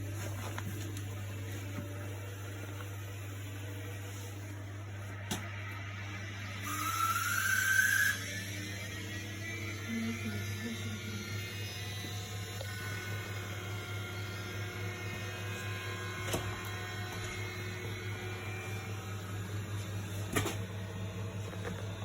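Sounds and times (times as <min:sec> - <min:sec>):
washing machine humming: 0:00.0 - 0:22.0
thin whining tones: 0:05.9 - 0:14.9.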